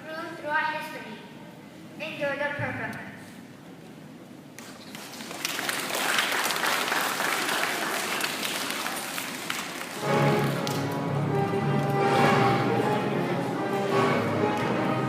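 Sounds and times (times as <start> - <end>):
audience applauding: 4.6 - 11.0
music: 10.0 - 15.0.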